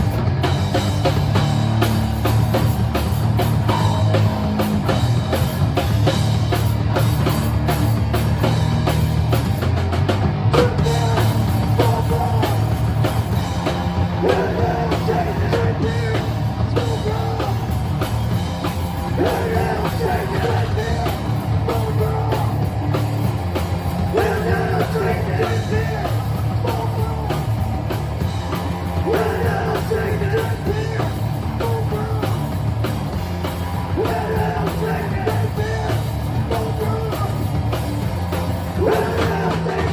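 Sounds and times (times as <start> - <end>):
bass guitar: 0.0 - 39.9
distorted guitars: 0.0 - 39.9
pounding drum kit: 0.0 - 39.9
person shouting lead vocal: 10.6 - 12.8, 14.1 - 17.9, 19.1 - 22.7, 24.0 - 27.5, 29.0 - 32.5, 33.8 - 37.5, 38.8 - 39.9.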